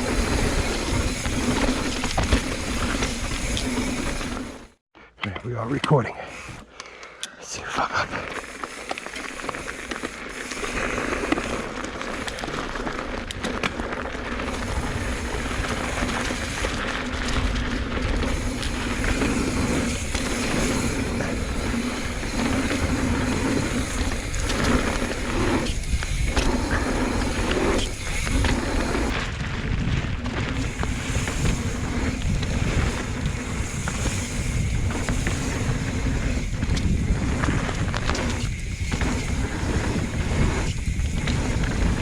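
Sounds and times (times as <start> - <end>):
bike tyres rolling on dirt: 0.0 - 4.8, 6.2 - 7.0, 7.9 - 42.0
wind rushing over microphone: 18.2 - 42.0.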